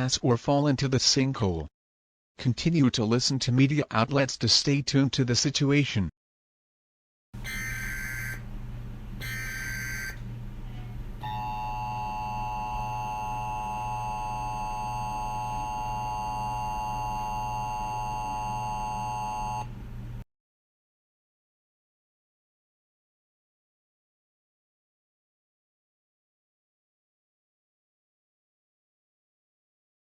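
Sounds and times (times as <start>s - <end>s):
data tone bursts: 7.4s - 8.4s, 9.2s - 10.2s, 11.2s - 19.7s
two-tone attention signal: 7.4s - 8.4s, 9.2s - 10.2s, 11.2s - 19.7s
low steady hum: 7.4s - 20.2s.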